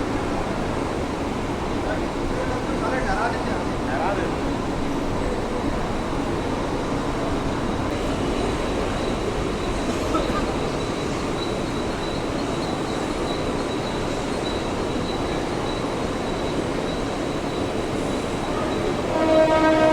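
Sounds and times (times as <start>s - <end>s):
electric train rumbling: 0.0s - 19.9s.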